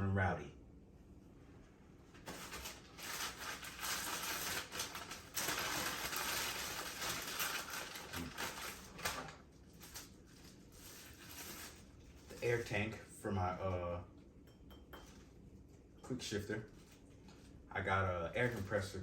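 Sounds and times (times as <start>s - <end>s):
packaging crinkling: 2.2s - 12.5s.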